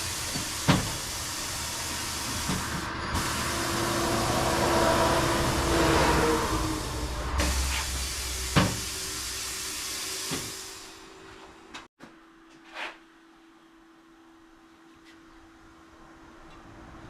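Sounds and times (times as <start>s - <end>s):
air hissing: 0.0s - 11.2s
short puff of air: 6.4s - 10.9s.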